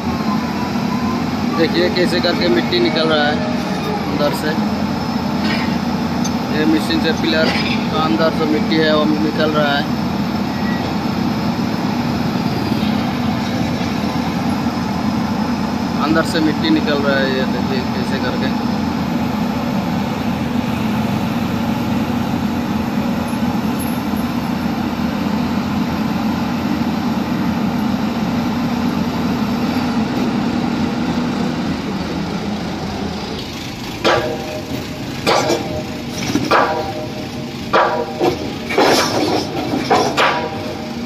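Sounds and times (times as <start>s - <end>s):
heavy machine engine running: 0.0s - 41.0s
loud metal clanks: 33.8s - 41.0s.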